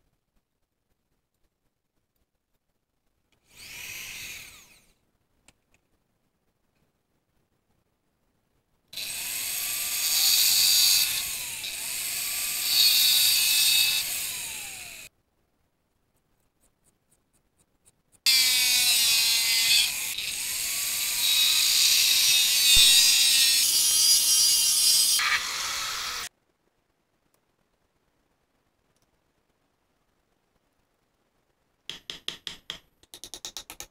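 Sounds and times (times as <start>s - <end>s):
power tool grinding: 18.3s - 26.3s.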